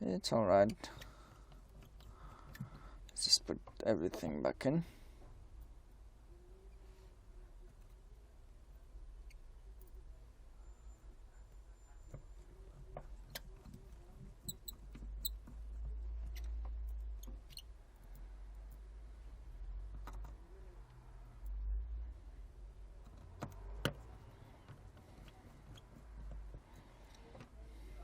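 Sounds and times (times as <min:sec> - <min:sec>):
small clicks and taps of tools: 0:00.6 - 0:04.3, 0:19.8 - 0:21.6, 0:23.0 - 0:27.6.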